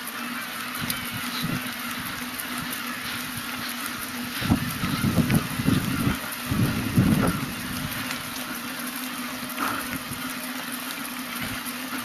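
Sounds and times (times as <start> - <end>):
wind buffeting microphone: 4.3 - 8.0.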